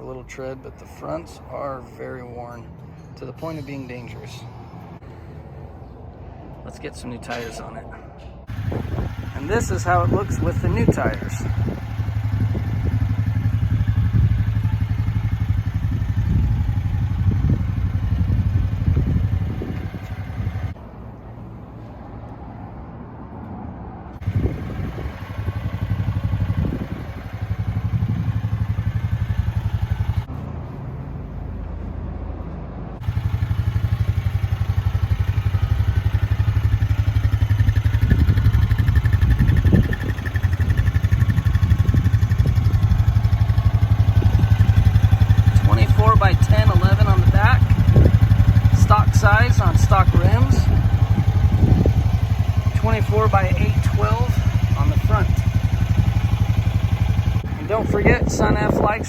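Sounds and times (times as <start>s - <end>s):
atv engine running: 8.5s - 20.8s, 24.2s - 30.3s, 33.0s - 59.0s.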